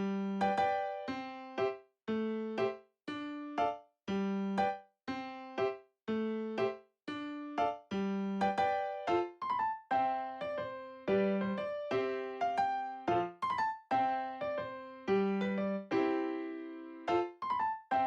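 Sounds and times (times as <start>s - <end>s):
electric piano melody: 0.0s - 18.0s.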